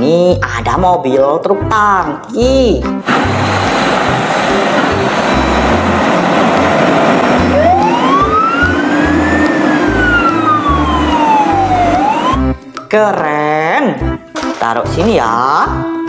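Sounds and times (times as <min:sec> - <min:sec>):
heavy vehicle engine running: 0:03.0 - 0:12.6
siren wail: 0:04.1 - 0:12.6.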